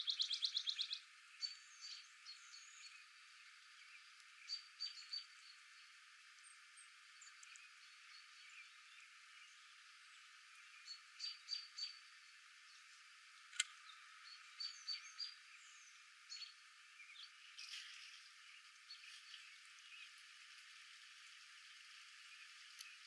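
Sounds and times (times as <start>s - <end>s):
small birds chirping: 0.0s - 23.0s
sharp click: 13.5s - 13.8s.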